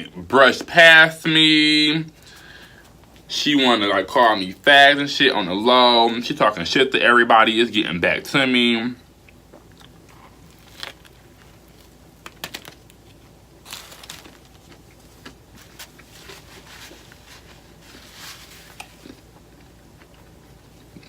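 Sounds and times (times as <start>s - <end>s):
person chewing: 9.1s - 21.0s
crinkling rustles: 9.6s - 20.4s.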